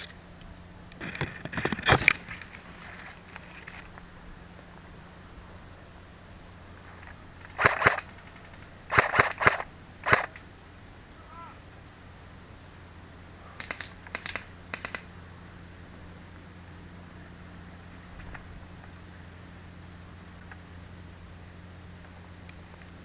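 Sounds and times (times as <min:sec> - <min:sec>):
airsoft gun shots: 0:07.4 - 0:10.5, 0:13.6 - 0:15.1.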